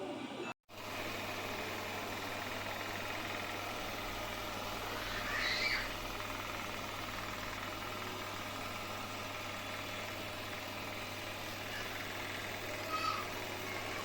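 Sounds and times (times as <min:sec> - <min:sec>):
robot vacuum whirring: 0:01.1 - 0:10.2.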